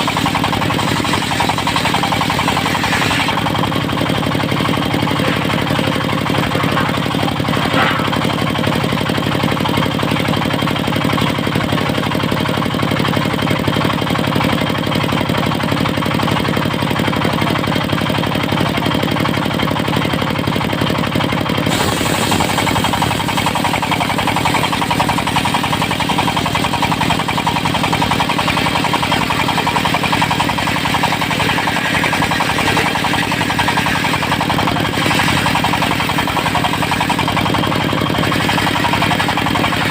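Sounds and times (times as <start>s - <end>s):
saw blade cutting wood: 0.0s - 8.6s, 21.7s - 39.9s
diesel engine knocking: 0.0s - 39.9s.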